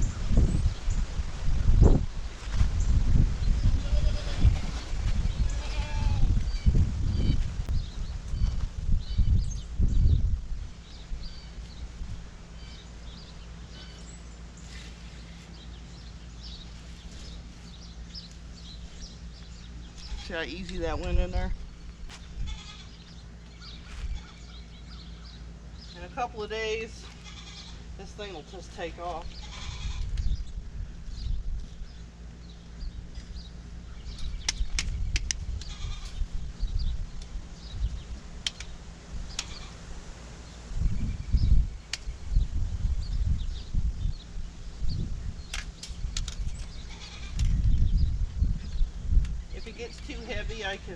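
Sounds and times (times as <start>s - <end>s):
wind buffeting microphone: 0.0s - 13.6s, 18.4s - 25.4s, 29.2s - 50.9s
small birds chirping: 1.7s - 50.9s
goats bleating: 3.8s - 4.5s, 5.4s - 6.3s, 22.5s - 23.0s, 27.0s - 27.8s, 29.3s - 30.1s
sharp clicks: 38.4s - 38.7s.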